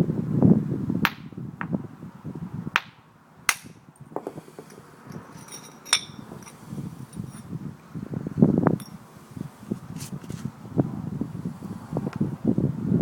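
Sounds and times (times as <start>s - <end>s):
stone knocking on flint: 3.5s - 6.2s.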